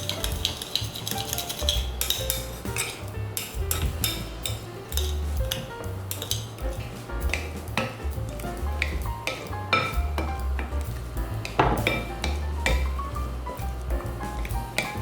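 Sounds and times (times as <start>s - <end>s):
background music with bass: 0.0s - 0.6s, 1.6s - 15.0s
utensil clinking against bowl: 0.0s - 6.5s.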